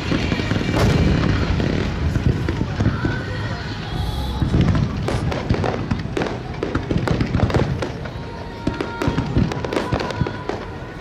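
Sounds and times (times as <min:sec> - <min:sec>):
firework shell bursts and crackles: 0:00.0 - 0:11.0
low booms: 0:00.3 - 0:08.0.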